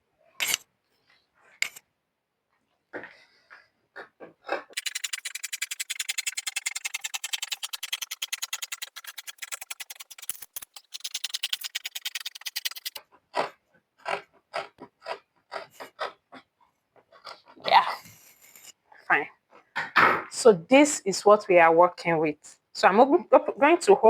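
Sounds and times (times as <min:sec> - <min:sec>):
scissors snipping cloth: 0:04.8 - 0:13.0
sharp snips: 0:04.8 - 0:13.0.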